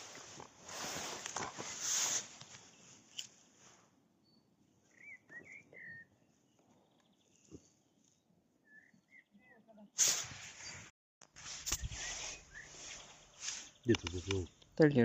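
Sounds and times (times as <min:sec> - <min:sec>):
faint bird chirps: 0:04.2 - 0:09.9, 0:11.7 - 0:14.6.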